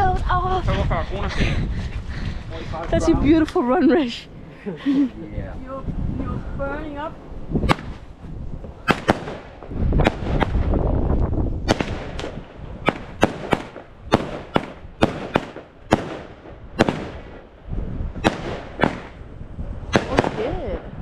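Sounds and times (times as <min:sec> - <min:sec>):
low rumble: 0:00.0 - 0:21.0
firework bangs: 0:06.7 - 0:21.0.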